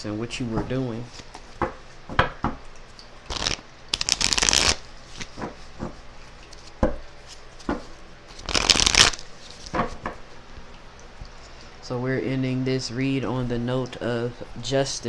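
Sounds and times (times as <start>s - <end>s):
cards shuffling rapidly: 3.3s - 10.1s.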